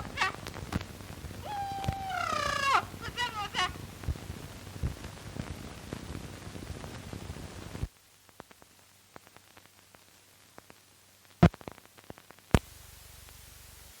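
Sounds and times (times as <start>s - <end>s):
loud pops: 0.0s - 3.1s, 11.3s - 12.8s
faint scattered clicks: 0.0s - 5.6s, 7.8s - 13.4s
film soundtrack crackle: 0.0s - 14.0s
steady hiss: 0.0s - 14.0s.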